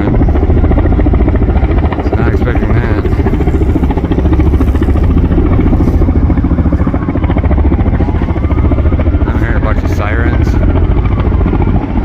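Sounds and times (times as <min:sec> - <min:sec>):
faint siren wail: 0:00.0 - 0:12.0
helicopter rotor chopping: 0:00.0 - 0:12.0.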